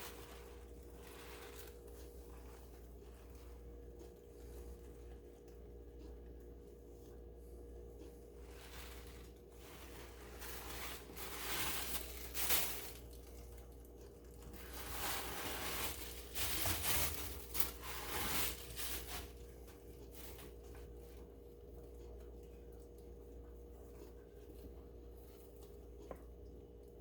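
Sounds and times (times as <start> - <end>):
packaging rustling and crinkling: 0.0 - 3.4, 8.4 - 20.8.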